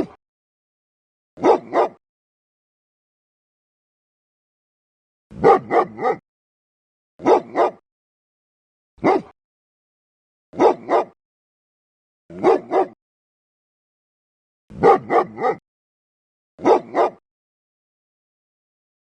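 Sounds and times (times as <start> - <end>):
dog barking: 1.4 - 2.0, 5.3 - 6.2, 7.2 - 7.8, 9.0 - 9.4, 10.5 - 11.2, 12.3 - 13.0, 14.7 - 15.6, 16.6 - 17.2.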